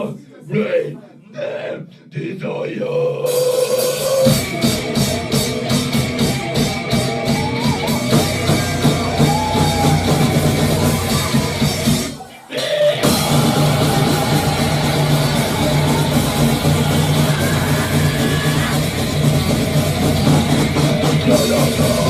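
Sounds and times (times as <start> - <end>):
live rock band playing: 3.8 - 12.3, 13.0 - 22.0.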